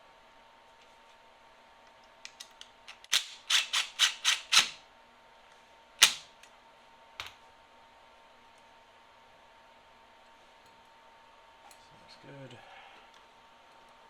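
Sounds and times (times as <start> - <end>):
impact driver bursts: 3.2 - 4.8.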